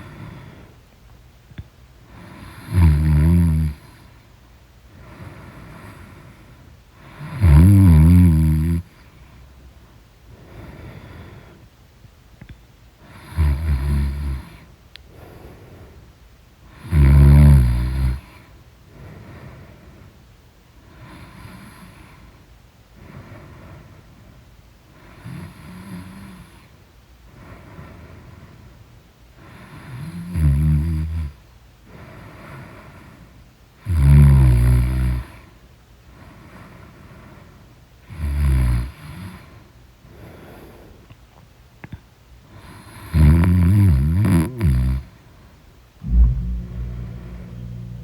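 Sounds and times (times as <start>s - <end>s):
quiet breathing: 0.0s - 0.9s, 2.0s - 2.7s, 3.7s - 7.4s, 8.8s - 13.6s, 14.3s - 16.9s, 18.2s - 25.8s, 26.4s - 30.0s, 31.8s - 33.5s, 35.3s - 37.8s, 39.2s - 43.1s.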